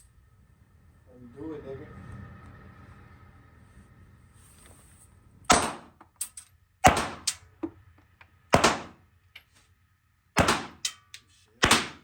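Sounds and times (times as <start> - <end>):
loud gunshots with echo: 5.5 - 5.9, 6.8 - 7.4, 8.5 - 9.0, 10.4 - 10.9, 11.6 - 12.0.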